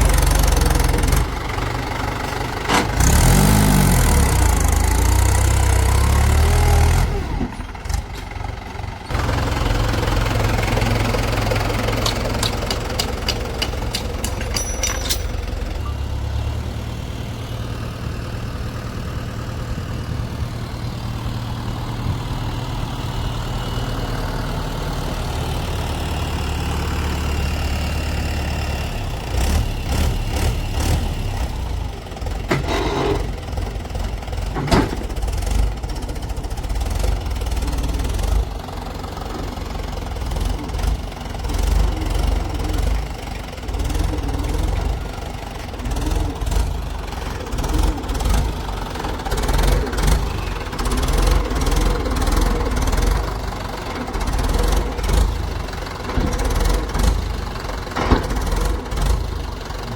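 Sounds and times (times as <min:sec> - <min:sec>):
diesel engine rumbling: 0:00.0 - 0:59.9
sharp knocks and clanks: 0:11.4 - 0:15.9, 0:32.5 - 0:33.3, 0:34.5 - 0:35.3, 0:57.9 - 0:58.8.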